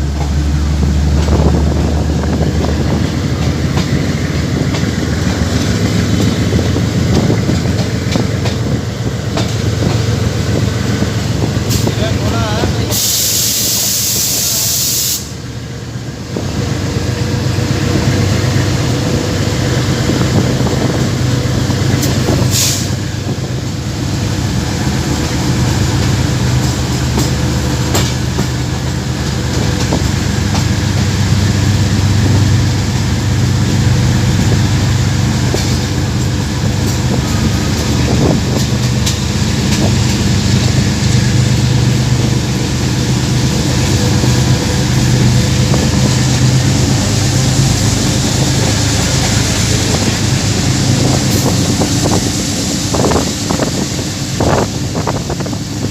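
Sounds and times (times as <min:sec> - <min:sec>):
locomotive engine droning: 0:00.0 - 0:55.9
train running noise: 0:00.0 - 0:55.9
air hiss: 0:12.9 - 0:15.4.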